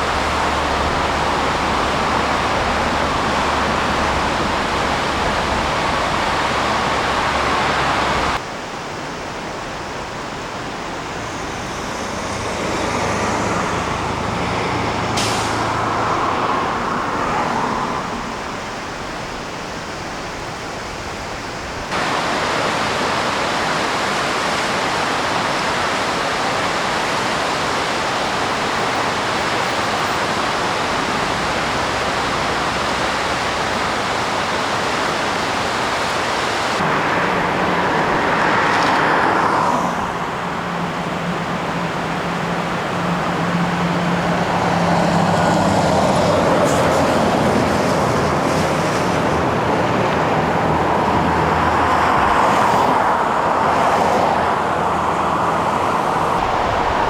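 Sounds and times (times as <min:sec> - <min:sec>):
highway traffic rushing: 0:00.0 - 0:57.0
vehicle passing: 0:11.1 - 0:18.7, 0:28.5 - 0:57.0.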